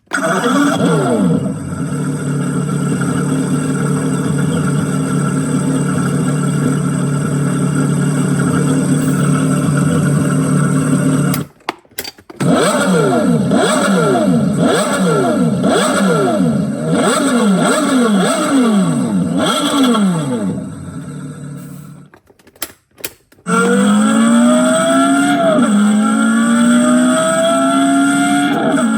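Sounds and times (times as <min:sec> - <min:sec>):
engine throttle blips: 0:00.1 - 0:11.5
sports car engine idling: 0:01.6 - 0:11.3.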